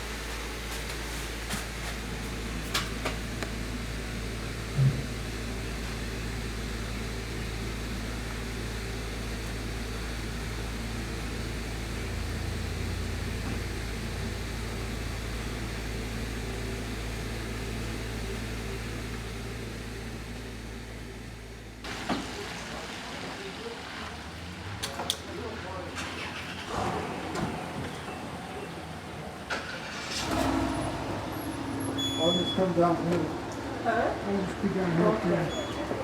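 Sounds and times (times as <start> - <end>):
car engine hum: 0.0 - 36.0.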